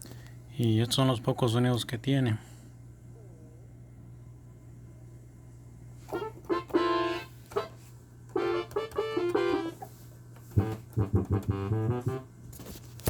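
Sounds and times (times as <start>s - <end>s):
steady low hum: 0.0s - 13.0s
synthesizer notes: 8.4s - 9.9s, 10.5s - 12.3s.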